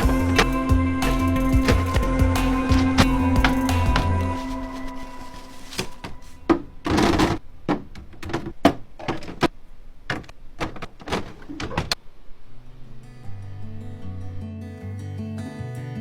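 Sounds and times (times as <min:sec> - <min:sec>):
containers clacking and knocking: 0:00.0 - 0:06.4
soft music: 0:00.0 - 0:06.4
sliding scrape: 0:00.0 - 0:07.4.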